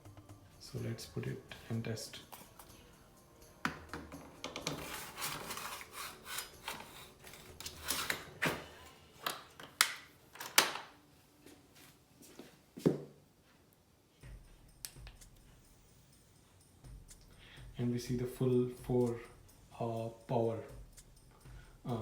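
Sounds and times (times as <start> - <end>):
battery cover rubbing and scraping: 4.6 - 8.5.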